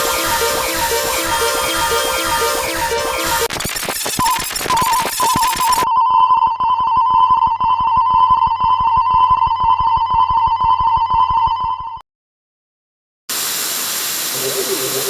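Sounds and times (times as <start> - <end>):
music burst: 0.0 - 4.0
electronic warning bell ringing: 0.0 - 5.9.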